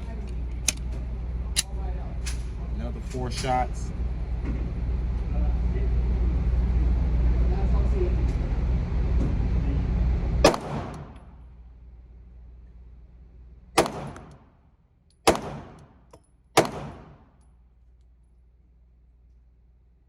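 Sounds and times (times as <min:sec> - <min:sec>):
pistol shots: 0:10.4 - 0:11.3, 0:13.8 - 0:14.5, 0:15.2 - 0:17.4.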